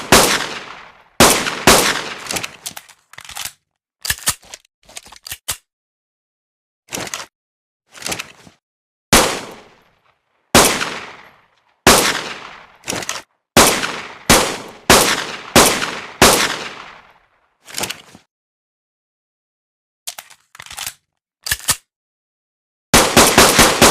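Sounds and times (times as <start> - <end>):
pistol shots: 0.0 - 2.6, 9.2 - 9.8, 10.6 - 11.3, 11.9 - 13.0, 13.6 - 17.1, 23.0 - 23.9.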